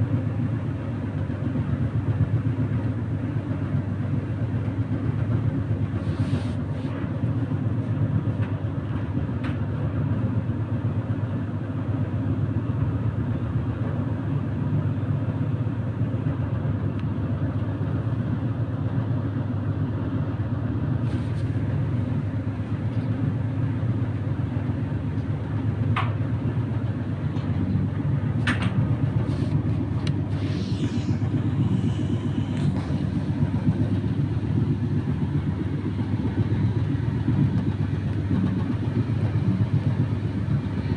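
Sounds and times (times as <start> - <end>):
tumble dryer humming: 21.4 - 40.9.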